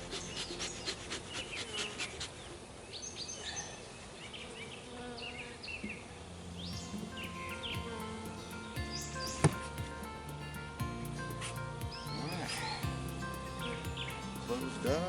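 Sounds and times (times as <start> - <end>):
bees buzzing: 6.7 - 15.0.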